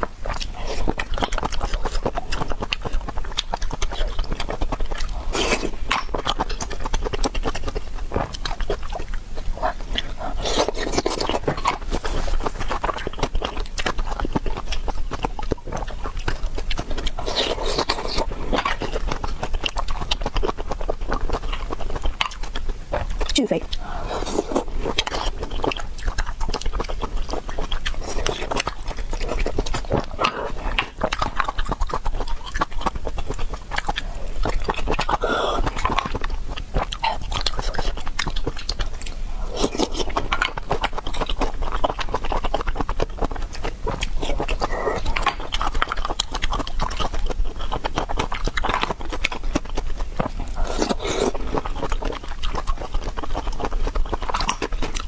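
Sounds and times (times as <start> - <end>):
wet chewing and biting: 0.0 - 55.0.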